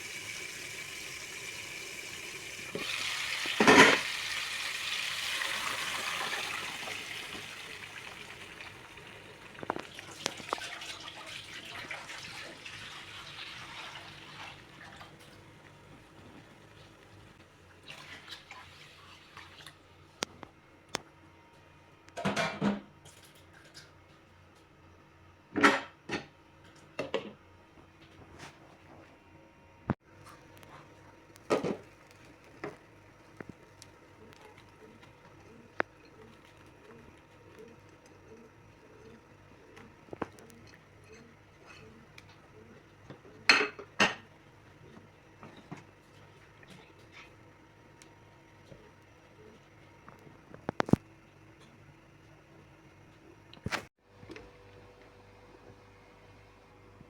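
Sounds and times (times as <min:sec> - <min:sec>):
dishes and utensils clattering: 0:03.5 - 0:04.1, 0:43.4 - 0:44.3.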